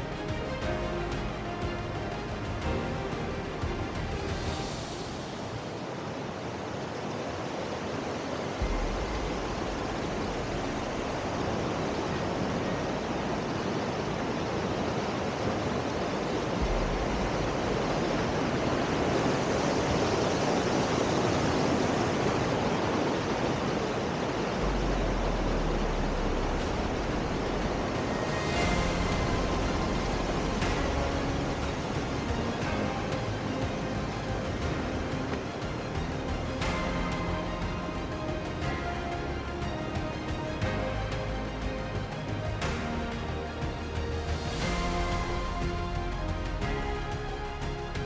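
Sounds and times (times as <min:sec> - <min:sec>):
waterfall rushing: 0:00.0 - 0:48.0
low rumble: 0:08.5 - 0:14.4, 0:16.0 - 0:20.6, 0:24.3 - 0:48.0.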